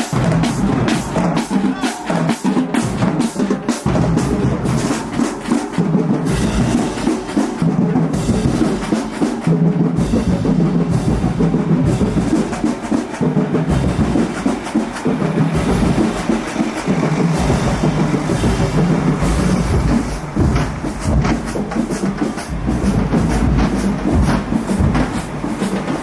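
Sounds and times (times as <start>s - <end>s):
marching band playing: 0.0s - 26.0s
sharp drum hits: 10.1s - 26.0s.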